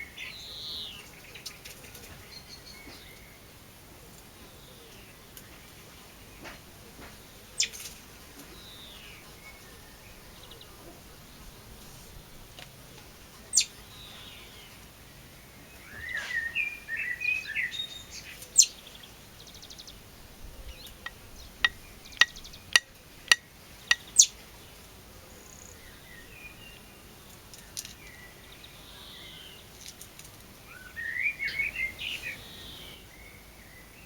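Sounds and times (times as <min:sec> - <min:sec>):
songbird warbling: 0:13.5 - 0:14.6, 0:15.8 - 0:24.7.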